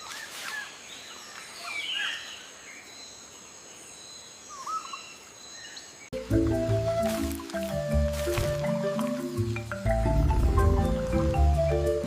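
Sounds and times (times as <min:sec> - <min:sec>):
music: 0:06.1 - 0:12.0.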